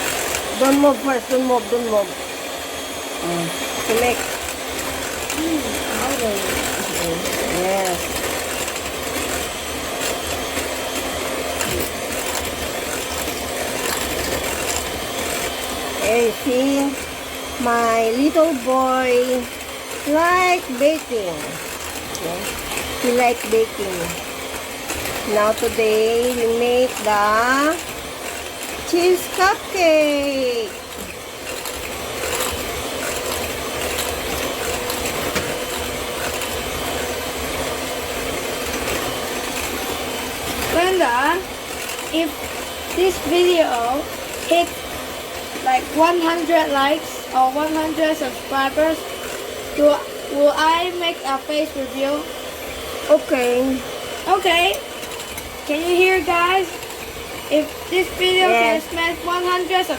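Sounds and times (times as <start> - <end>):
electric hand mixer running: 0.0 - 59.9
beaters clicking against bowl: 3.8 - 46.6.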